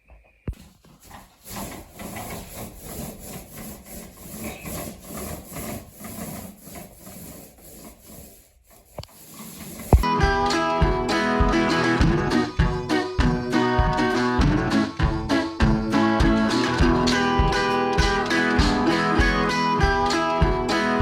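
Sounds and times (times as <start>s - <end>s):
rubbing and scraping strokes: 0.5s - 10.1s
acoustic guitar music: 9.9s - 21.0s.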